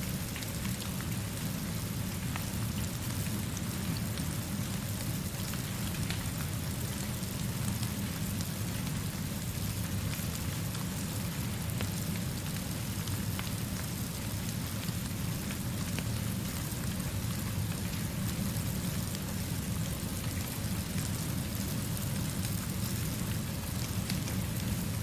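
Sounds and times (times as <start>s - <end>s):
steady rainfall: 0.0s - 25.0s.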